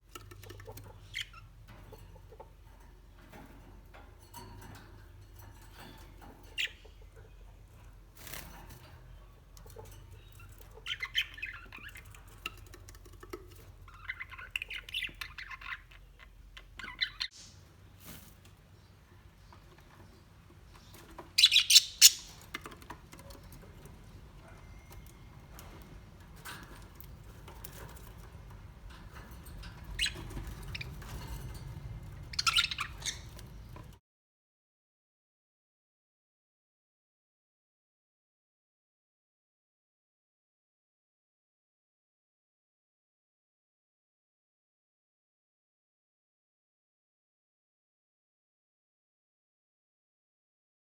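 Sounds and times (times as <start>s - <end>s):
birds calling: 0.1s - 34.0s.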